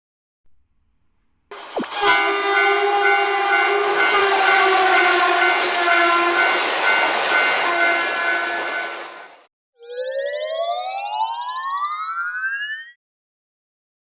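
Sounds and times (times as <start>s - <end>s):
running train noise: 1.5s - 9.5s
train horn: 1.9s - 6.7s, 7.5s - 9.3s.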